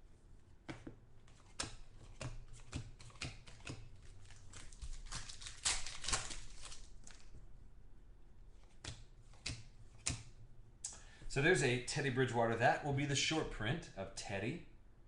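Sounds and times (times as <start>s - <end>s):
trading cards clicking and tapping: 0.7s - 4.8s
cards rustling: 0.7s - 7.4s.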